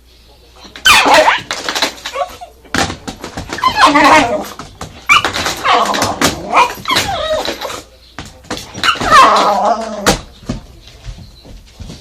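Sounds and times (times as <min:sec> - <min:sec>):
dog barking and whining: 0:00.7 - 0:02.5, 0:03.5 - 0:07.8, 0:08.7 - 0:10.1.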